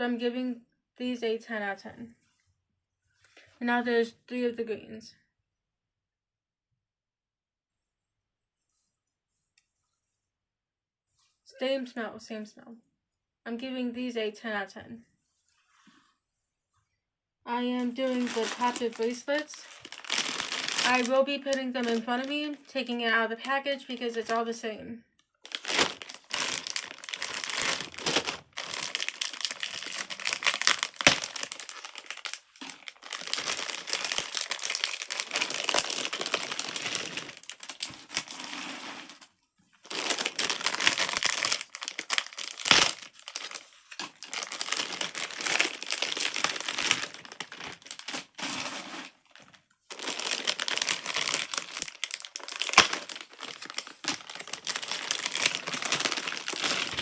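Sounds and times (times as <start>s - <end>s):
packaging crinkling and tearing: 17.8s - 22.7s, 25.4s - 57.0s.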